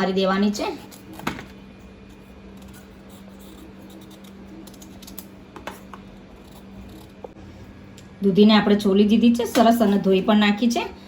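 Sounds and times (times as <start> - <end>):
steady low hum: 0.0 - 11.0
vegetable peeler scraping gourd skin: 2.1 - 5.3, 6.1 - 7.3.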